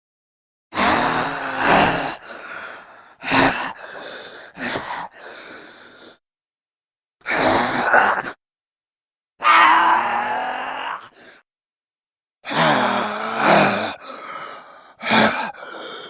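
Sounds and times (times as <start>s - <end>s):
sharp intakes of breath: 2.1s - 6.2s, 13.8s - 16.0s
man's raspy zombie cry: 9.4s - 11.1s.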